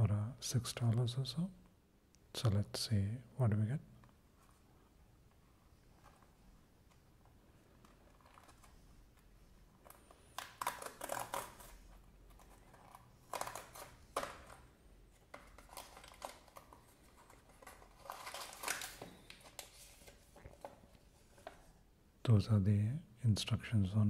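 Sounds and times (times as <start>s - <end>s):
packaging rustling: 7.6s - 21.7s.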